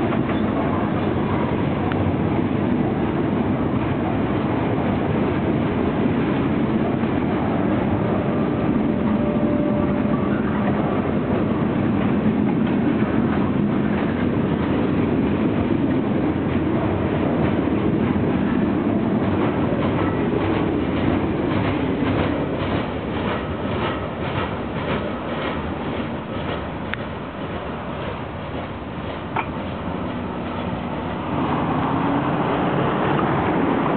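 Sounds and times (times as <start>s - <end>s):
wheels clacking over rail joints: 0.0s - 2.1s, 9.0s - 33.9s
freight train rumbling past: 0.0s - 33.9s.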